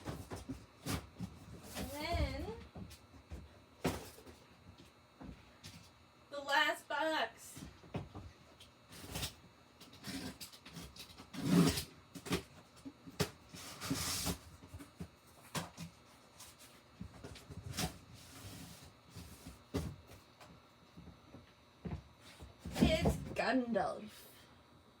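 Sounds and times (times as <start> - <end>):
cardboard scraping and tearing: 8.9 - 12.5, 13.5 - 14.6.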